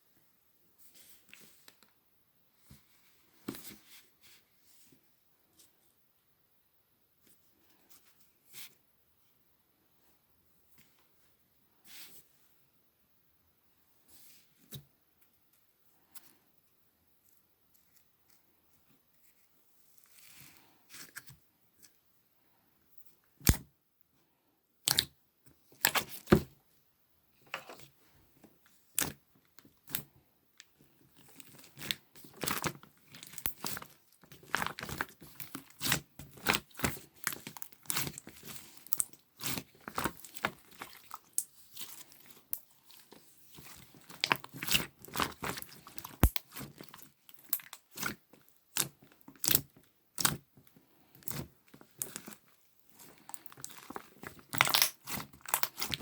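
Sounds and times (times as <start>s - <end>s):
slime clicking and popping: 44.1s - 49.6s, 53.3s - 56.0s.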